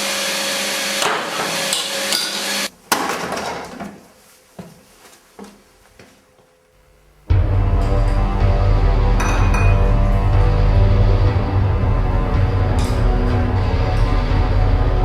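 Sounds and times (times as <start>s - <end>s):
vacuum cleaner whining: 0.0s - 2.7s
sharp bang: 7.4s - 10.3s.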